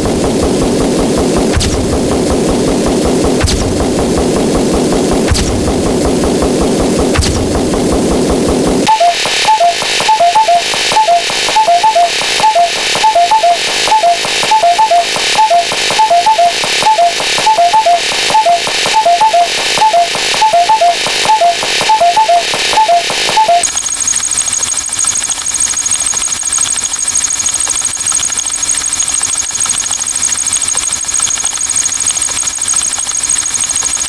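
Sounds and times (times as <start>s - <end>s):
high-low beep pairs: 8.8s - 34.0s.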